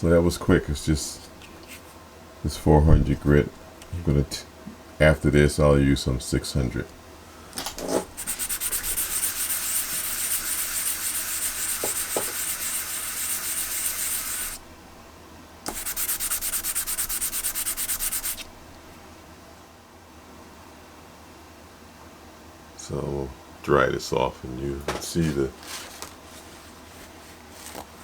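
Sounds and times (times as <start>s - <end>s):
metal rubbing on sandpaper: 8.1s - 14.6s, 15.7s - 18.5s.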